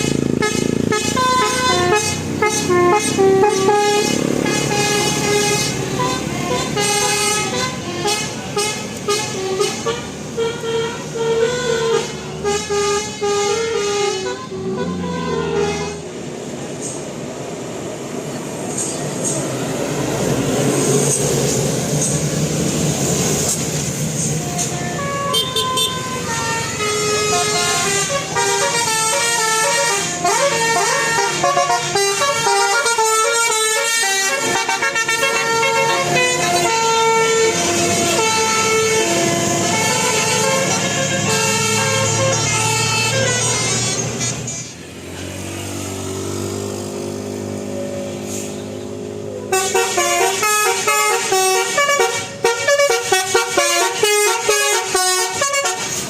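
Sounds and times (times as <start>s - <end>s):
musical vehicle horn playing tune: 0.0s - 16.2s, 24.3s - 44.3s, 49.4s - 56.0s
engine and road noise: 0.0s - 56.0s.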